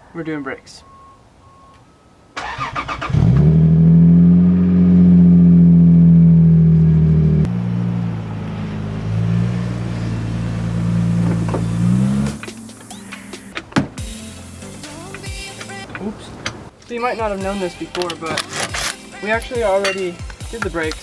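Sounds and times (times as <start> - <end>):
car engine starter cranking: 2.4 - 3.7, 17.7 - 21.0
car engine idling: 3.4 - 18.6.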